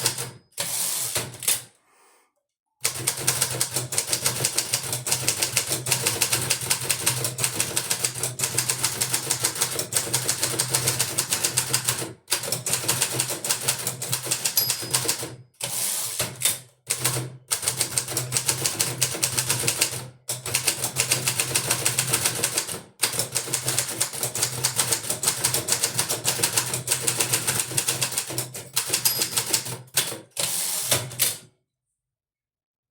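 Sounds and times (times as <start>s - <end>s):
typewriter keys clacking: 12.8s - 15.2s, 17.6s - 31.4s.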